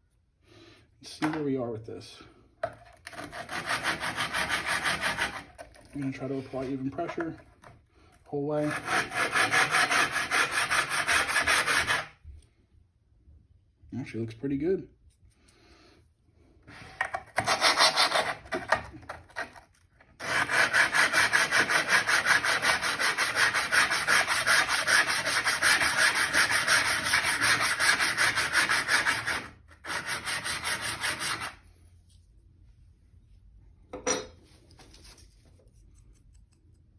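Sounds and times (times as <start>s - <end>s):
metal scrubbing on sandpaper: 3.3s - 5.5s, 8.6s - 12.1s, 17.4s - 18.4s, 20.2s - 31.6s.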